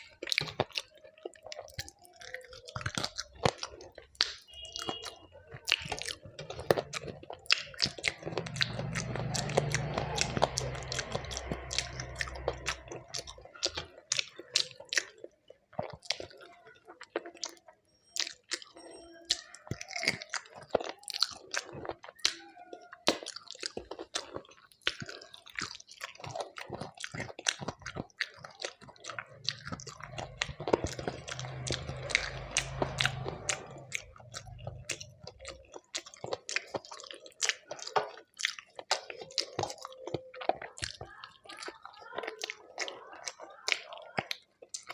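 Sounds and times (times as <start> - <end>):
food crunching: 0.0 - 44.9
person chewing food: 0.0 - 44.9
low rumbling: 8.4 - 13.3, 29.6 - 35.0.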